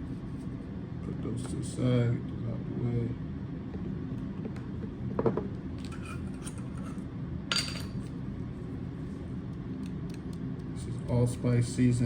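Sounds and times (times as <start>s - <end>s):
steady low hum: 0.0s - 12.0s
containers knocking on counter: 5.2s - 5.5s.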